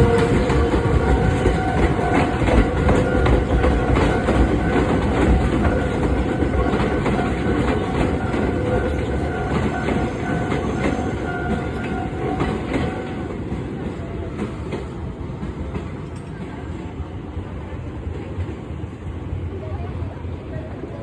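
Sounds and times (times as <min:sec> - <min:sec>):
train wheels clacking over rail joints: 0:00.0 - 0:16.6.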